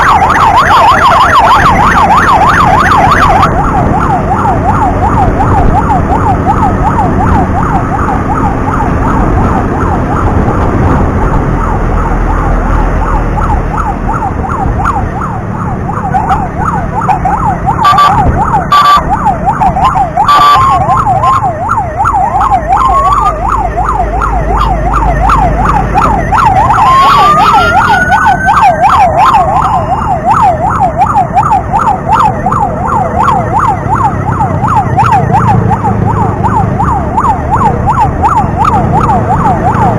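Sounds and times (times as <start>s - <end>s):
ambulance siren yelping: 0.0s - 39.9s
motorcycle engine rumble: 0.0s - 39.9s
wind rumble: 0.0s - 39.9s
horn blasts: 26.8s - 28.0s.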